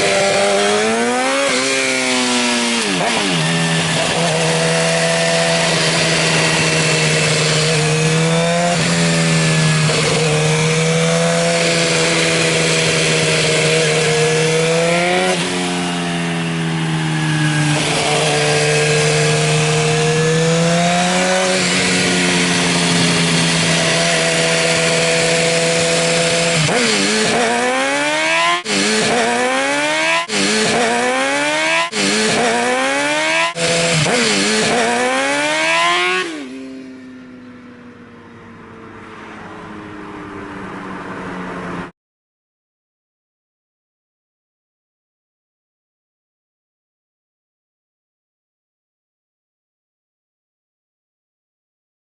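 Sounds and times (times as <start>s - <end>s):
motorcycle engine revving: 0.0s - 41.9s
quick throttle blips: 23.4s - 36.5s.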